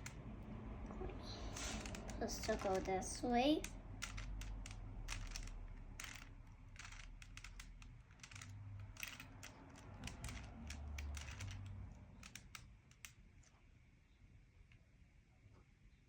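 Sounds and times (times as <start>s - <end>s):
plastic cube clicking as twisted: 1.6s - 2.9s, 3.6s - 13.2s.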